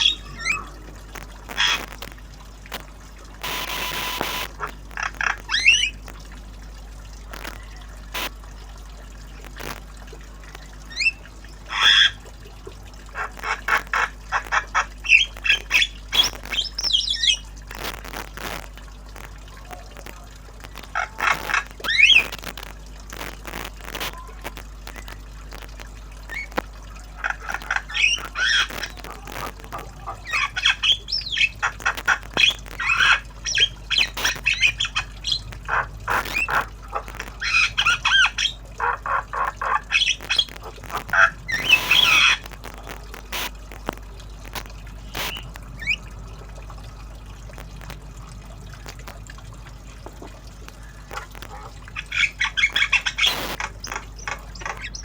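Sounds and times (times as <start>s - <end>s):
myna squawks and chirps: 0.0s - 0.7s, 1.5s - 2.1s, 3.4s - 6.0s, 10.9s - 12.2s, 13.1s - 18.6s, 27.2s - 43.5s, 44.6s - 46.1s, 50.8s - 55.0s.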